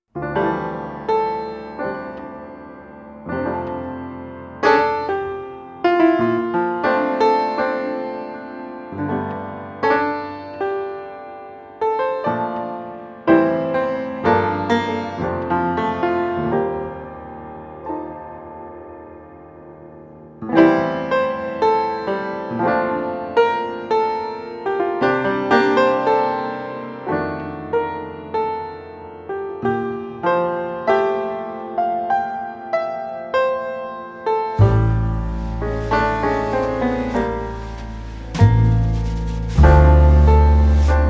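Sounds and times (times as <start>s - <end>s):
gentle piano chords: 34.6s - 41.0s.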